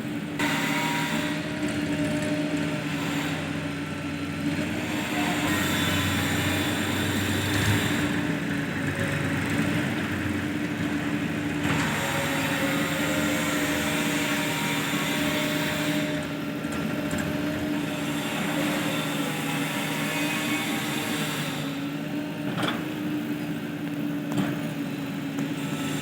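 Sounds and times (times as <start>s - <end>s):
diesel engine running: 0.0s - 19.7s.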